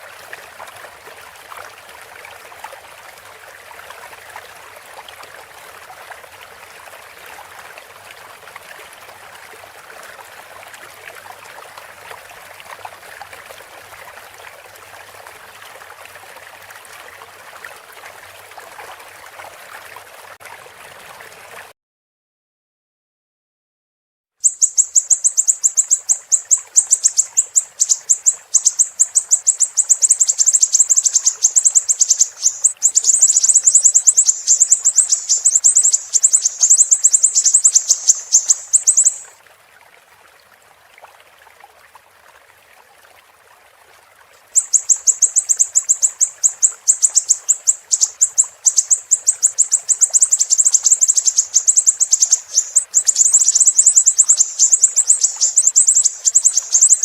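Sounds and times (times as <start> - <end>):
bird singing a high trill: 24.4 - 39.3, 44.6 - 57.0
faint steady hiss: 24.4 - 39.5, 43.8 - 57.0.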